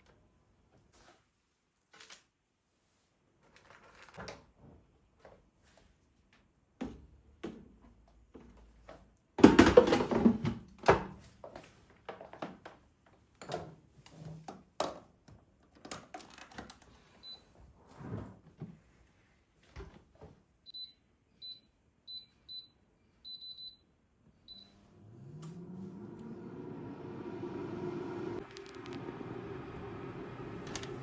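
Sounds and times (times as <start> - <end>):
motor humming: 24.9 - 31.0.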